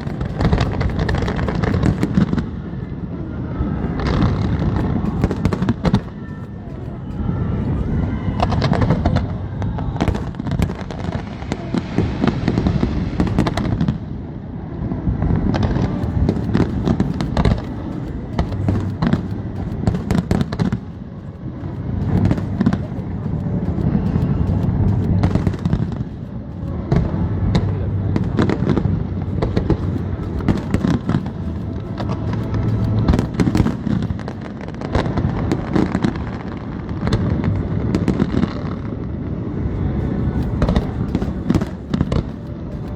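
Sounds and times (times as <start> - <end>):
fireworks bangs and crackles: 0.0 - 3.2, 3.8 - 14.4, 15.0 - 42.9.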